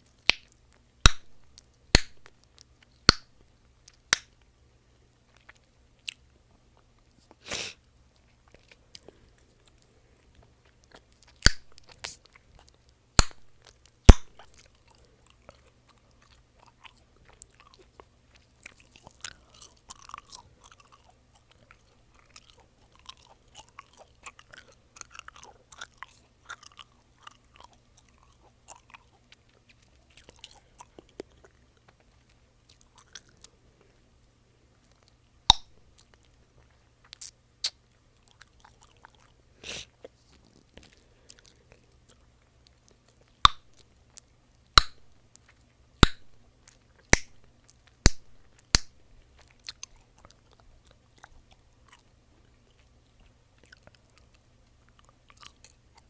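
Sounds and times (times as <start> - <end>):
sharp gum pops: 0.2 - 2.3, 3.0 - 3.4, 11.4 - 12.2, 13.2 - 14.6, 35.5 - 35.8, 43.4 - 43.8, 44.8 - 45.1, 46.0 - 46.4, 47.1 - 47.4, 48.0 - 49.0
wet gum chewing: 8.2 - 56.0.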